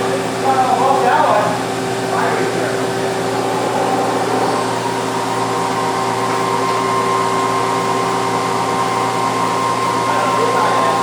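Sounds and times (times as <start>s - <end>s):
lathe mechanical whine: 0.0s - 11.0s
constant rush of noise: 2.0s - 6.2s.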